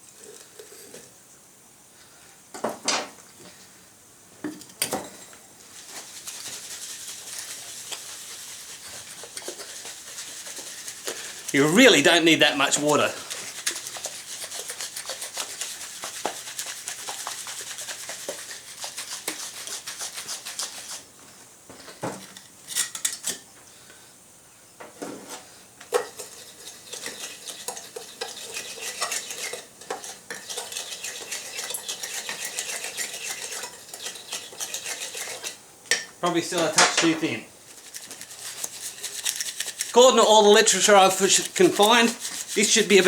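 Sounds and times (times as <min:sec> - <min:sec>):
stirrer scraping and clinking container: 0:05.2 - 0:21.0, 0:25.8 - 0:43.0.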